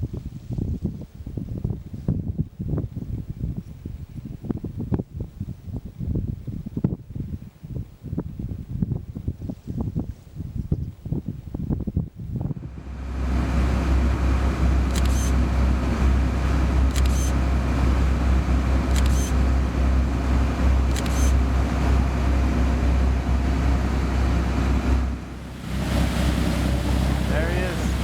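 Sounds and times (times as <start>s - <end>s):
boat engine rumbling: 12.5s - 28.0s.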